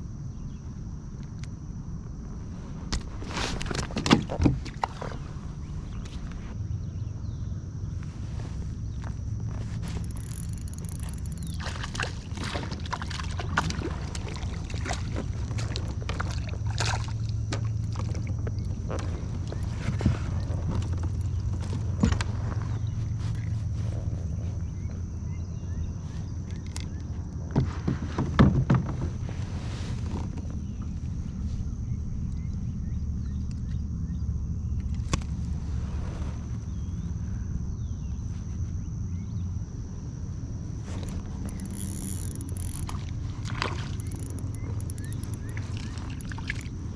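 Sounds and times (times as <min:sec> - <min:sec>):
wind rumble on microphone: 0:00.0 - 0:46.9
water splashing against a kayak: 0:02.9 - 0:06.4, 0:08.4 - 0:24.8, 0:40.8 - 0:46.9.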